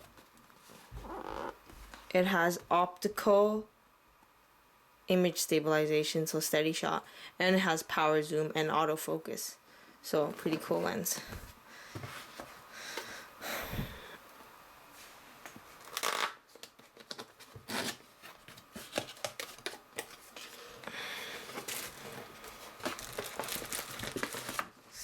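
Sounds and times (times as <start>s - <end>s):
cardboard and paper rustling: 15.8s - 24.8s.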